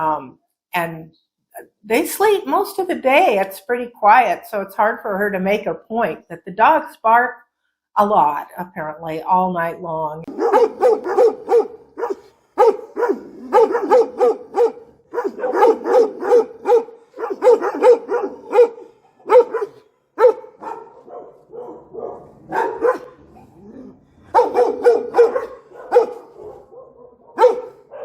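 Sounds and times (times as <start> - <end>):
dogs barking: 10.3 - 28.0.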